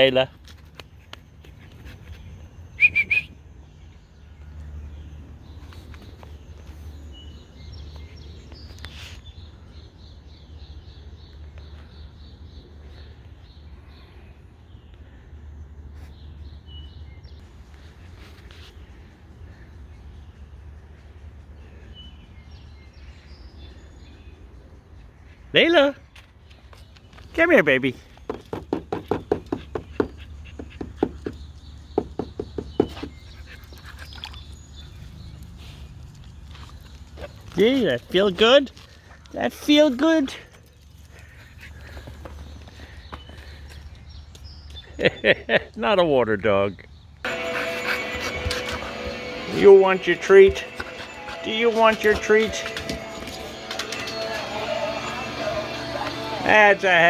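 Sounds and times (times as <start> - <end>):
bird chirping: 26.4 - 38.5, 46.8 - 57.0
dog making rhythmic breath sounds: 47.3 - 55.6.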